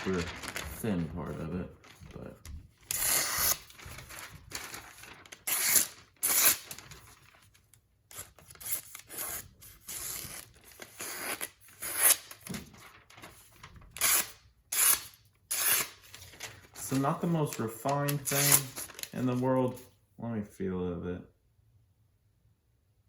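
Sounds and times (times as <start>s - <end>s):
knife slicing through paper: 2.9s - 7.5s, 17.8s - 19.4s.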